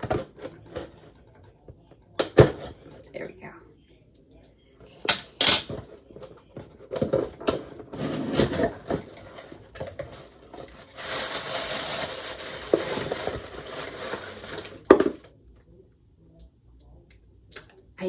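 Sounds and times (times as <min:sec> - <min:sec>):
packaging rustling: 0:07.0 - 0:15.2.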